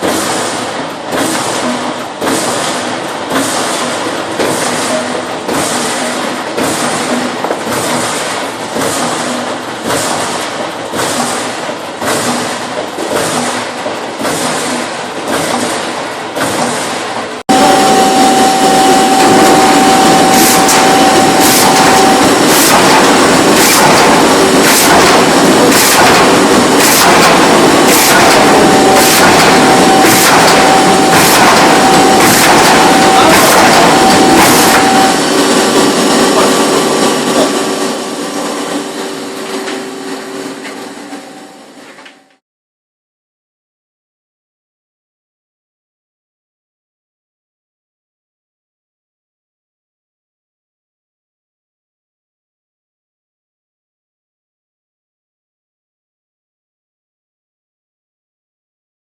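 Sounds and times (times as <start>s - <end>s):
machine whine: 0.0s - 42.4s
machine blade splitting wood: 19.0s - 37.9s.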